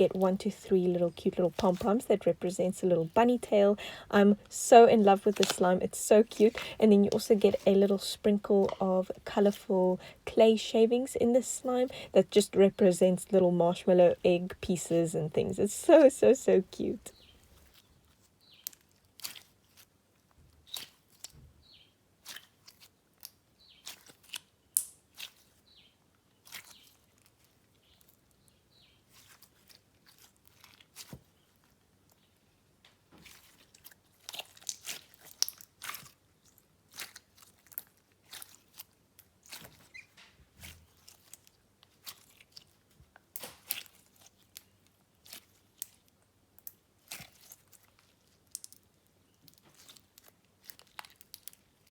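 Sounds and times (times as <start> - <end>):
slime squished by hand: 18.5 - 19.9, 20.6 - 21.3, 22.2 - 25.6, 29.1 - 31.7, 33.2 - 48.8.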